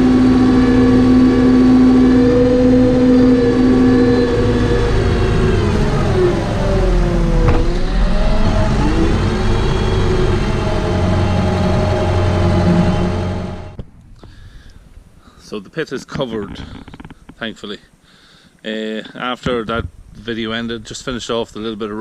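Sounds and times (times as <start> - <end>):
tractor diesel engine under load: 0.0 - 13.8.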